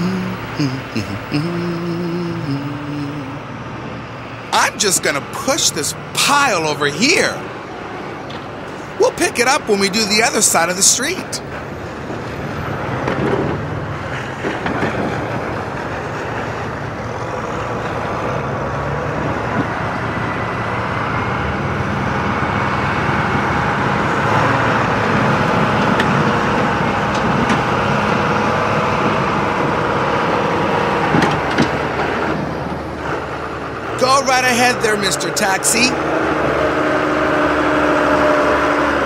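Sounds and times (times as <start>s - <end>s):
heavy machine engine under load: 11.4s - 39.0s.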